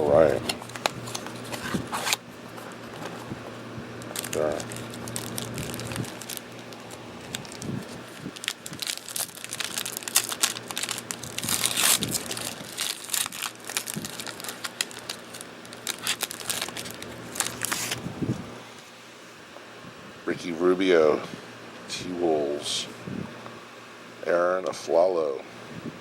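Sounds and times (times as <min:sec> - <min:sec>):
foil wrapper crinkling and tearing: 0:00.1 - 0:03.2, 0:04.0 - 0:18.1
cards being handled: 0:00.2 - 0:03.3, 0:04.0 - 0:18.1.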